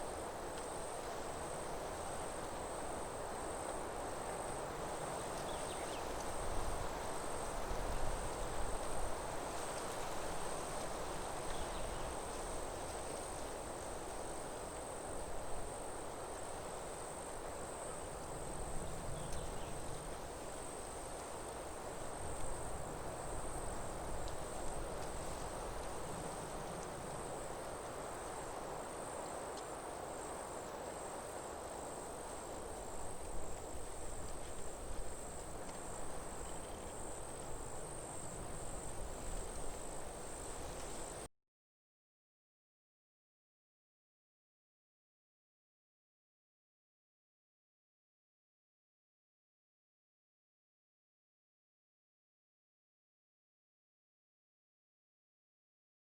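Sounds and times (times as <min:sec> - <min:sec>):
insects trilling: 0:22.0 - 0:41.3.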